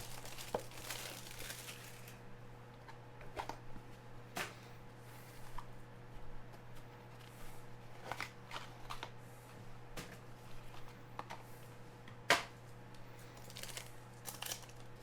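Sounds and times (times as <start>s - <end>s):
cards and wrappers rustling: 0.0s - 2.2s, 13.2s - 15.0s
steady low hum: 0.0s - 15.0s.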